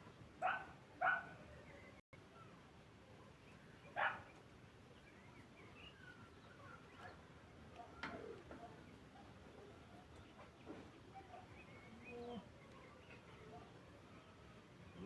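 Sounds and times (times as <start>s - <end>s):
dog barking: 0.4s - 1.4s, 4.0s - 4.3s.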